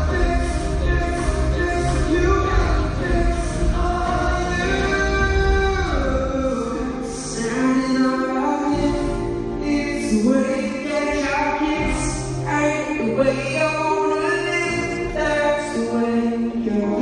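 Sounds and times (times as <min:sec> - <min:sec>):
people singing long sliding notes: 0:00.0 - 0:07.3
steady bass: 0:00.0 - 0:15.8
pop band playing live: 0:00.0 - 0:17.0.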